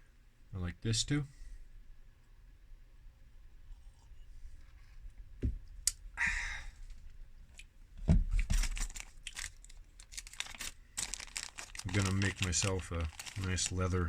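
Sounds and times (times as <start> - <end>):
crackly rustling and crinkling: 3.4 - 14.0
dull knocks: 5.4 - 5.7.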